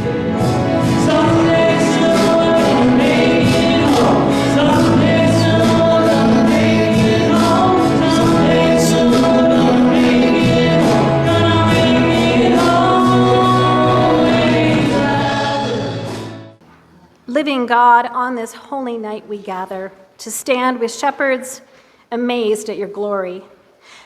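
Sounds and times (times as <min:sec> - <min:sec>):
choir singing a hymn: 0:00.0 - 0:16.4.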